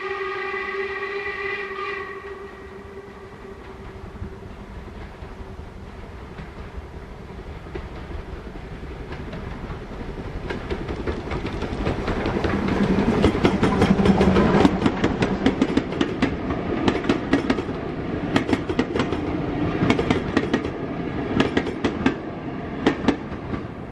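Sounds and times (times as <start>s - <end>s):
train rumble: 0.0s - 23.9s
train wheels clicking over rail joints: 6.2s - 23.9s.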